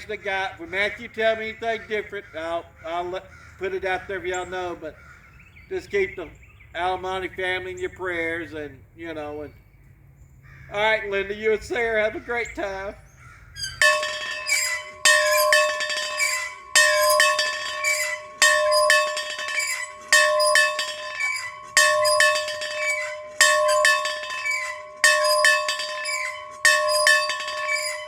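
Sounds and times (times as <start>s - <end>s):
bell tolling: 13.6s - 28.0s.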